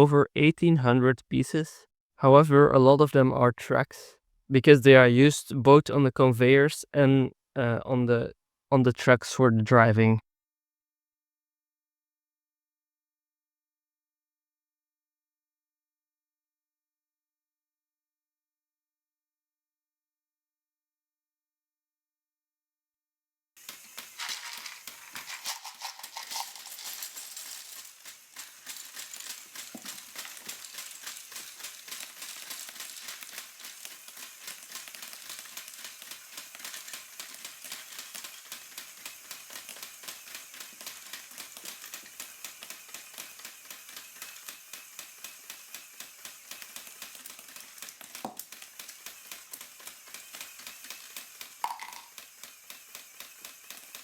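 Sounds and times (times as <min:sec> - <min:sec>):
plastic gears clicking and rattling: 0:23.6 - 0:54.0.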